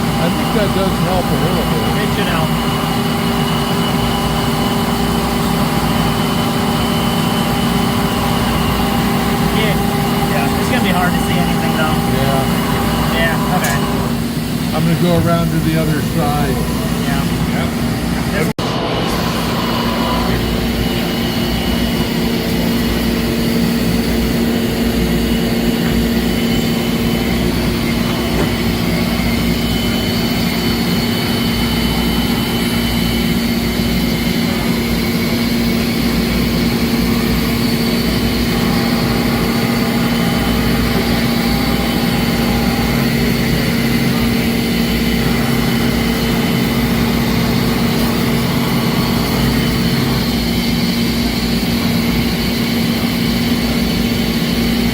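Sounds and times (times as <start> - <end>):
lathe machine hum: 0.0 - 54.9.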